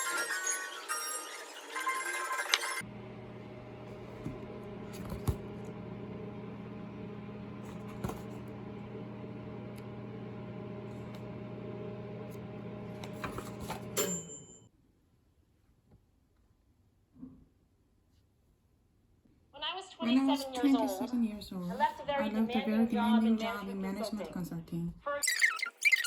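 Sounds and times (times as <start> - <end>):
appliance electrical hum: 2.5 - 14.7.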